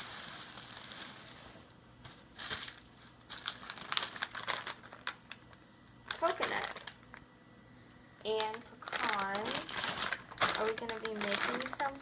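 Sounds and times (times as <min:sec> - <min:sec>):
packing material crinkling: 0:00.0 - 0:07.2, 0:08.2 - 0:12.0.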